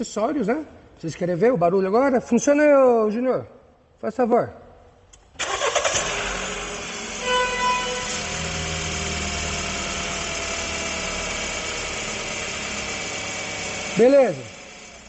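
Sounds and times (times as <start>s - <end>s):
car engine idling: 5.4s - 15.0s
short tone: 7.2s - 8.3s.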